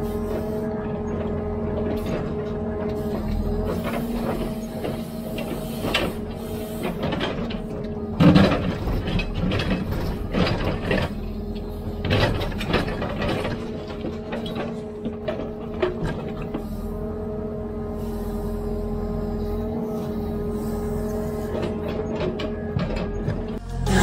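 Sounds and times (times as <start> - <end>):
diesel engine running: 0.0 - 24.0
metallic clanks and rattles: 6.8 - 11.4, 21.6 - 23.6.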